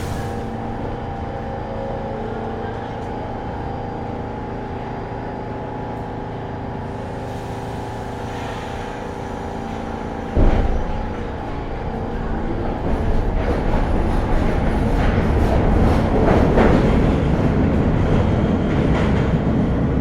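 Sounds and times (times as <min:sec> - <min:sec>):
subway train rumble and hum: 0:00.0 - 0:20.0
loud thump: 0:10.4 - 0:11.1.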